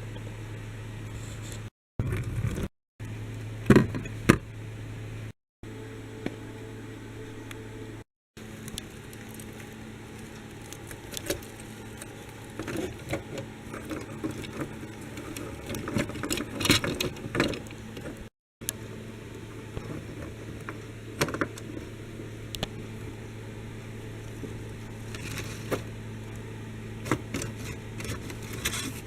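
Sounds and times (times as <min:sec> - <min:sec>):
low hum: 0:00.0 - 0:29.0.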